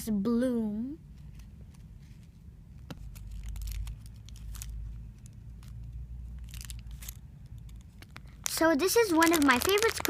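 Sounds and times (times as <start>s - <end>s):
plastic packaging crinkling: 2.9s - 10.0s.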